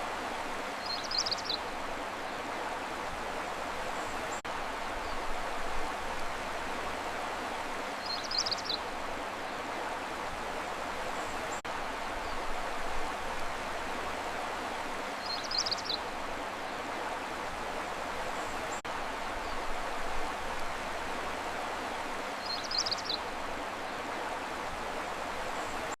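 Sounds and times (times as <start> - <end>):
flowing water rushing: 0.0 - 26.0.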